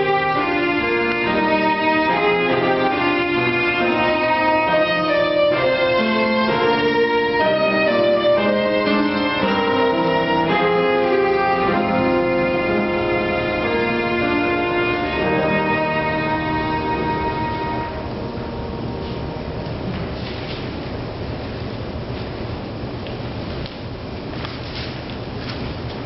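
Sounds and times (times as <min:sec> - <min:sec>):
violin slow melody: 0:00.0 - 0:19.9.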